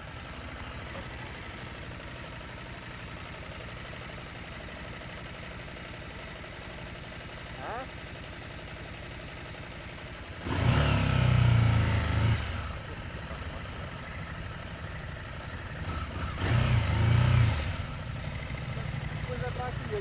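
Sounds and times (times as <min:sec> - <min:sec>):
motorcycle engine throttle bursts: 0:10.3 - 0:20.0.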